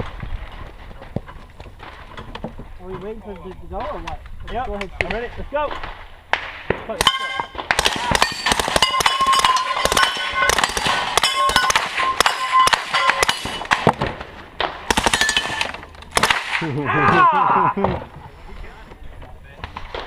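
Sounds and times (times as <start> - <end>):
steel targets clanging: 6.9 - 13.9, 14.9 - 16.3.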